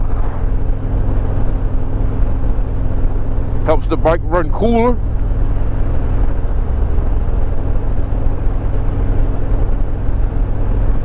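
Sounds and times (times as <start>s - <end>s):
wind noise: 0.0s - 4.2s
road noise: 0.0s - 11.0s.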